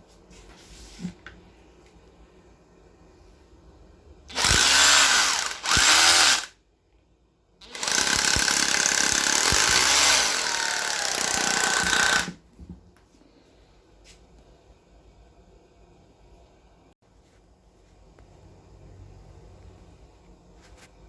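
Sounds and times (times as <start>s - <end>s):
angle grinder running under load: 4.3s - 6.5s, 9.1s - 12.3s.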